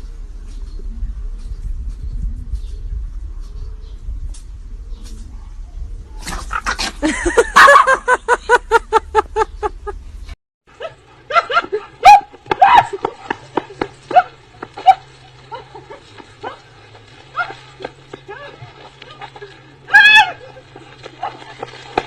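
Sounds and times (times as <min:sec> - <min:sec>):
dog yelping and barking: 0:07.6 - 0:08.0, 0:10.8 - 0:13.4, 0:14.1 - 0:15.2.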